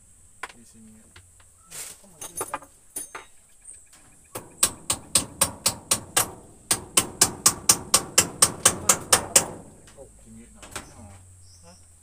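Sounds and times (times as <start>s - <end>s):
rapid hammer blows: 4.4s - 10.0s.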